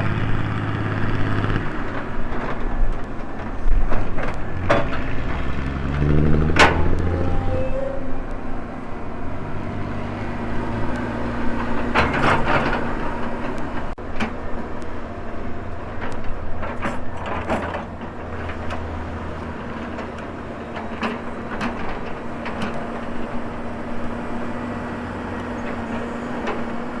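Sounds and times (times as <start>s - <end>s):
diesel engine running under load: 0.0s - 27.0s
sharp metallic clanks: 4.0s - 14.0s.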